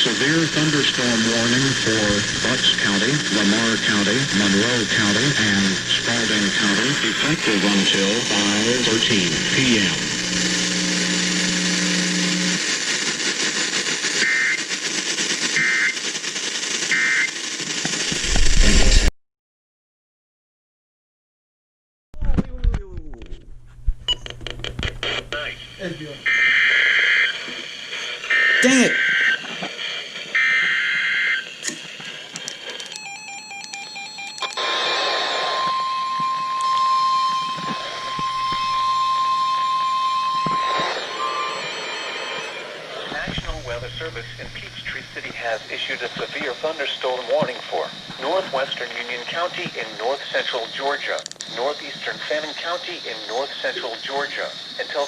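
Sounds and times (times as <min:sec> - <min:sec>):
radio static hiss: 0:00.0 - 0:19.1, 0:23.6 - 0:32.9, 0:34.5 - 0:55.0
steady warning alarm tone: 0:00.2 - 0:12.7, 0:25.4 - 0:29.4, 0:30.3 - 0:31.6, 0:32.9 - 0:46.8
low steady hum: 0:01.0 - 0:12.6, 0:22.4 - 0:26.3, 0:43.2 - 0:46.4
two-tone digital data bursts: 0:35.4 - 0:46.7.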